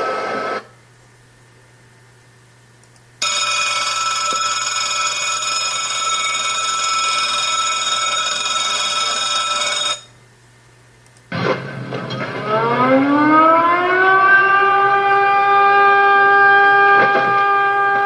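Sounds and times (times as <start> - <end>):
electric bell ringing: 3.2 - 10.1
loud rising tones: 11.3 - 18.0.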